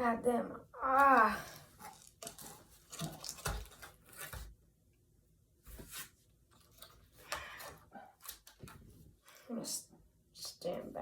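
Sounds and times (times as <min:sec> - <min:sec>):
packaging scraping and tearing: 0:01.8 - 0:04.5.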